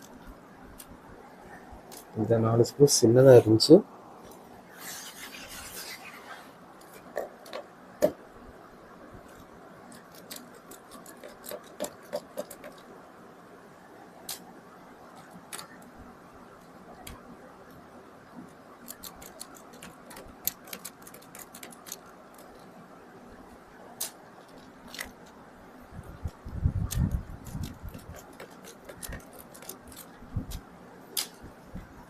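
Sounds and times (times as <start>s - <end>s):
screwdriver clicking on screws: 18.9s - 22.5s.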